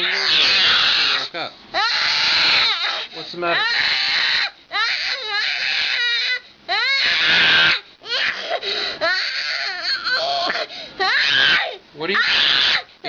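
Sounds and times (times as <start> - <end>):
young child screaming and crying: 1.8 - 8.4, 9.0 - 12.8
child breathing: 7.9 - 9.0, 10.6 - 11.0.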